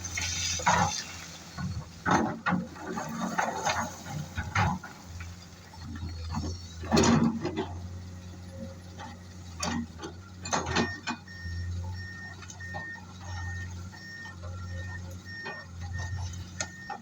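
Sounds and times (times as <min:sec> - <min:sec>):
diesel excavator engine: 0:00.0 - 0:17.0
backup alarm beeping: 0:10.7 - 0:17.0.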